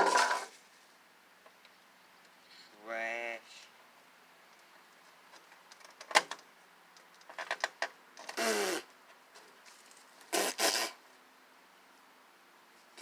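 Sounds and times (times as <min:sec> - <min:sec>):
metal clanks and scrapes: 0:00.0 - 0:00.6.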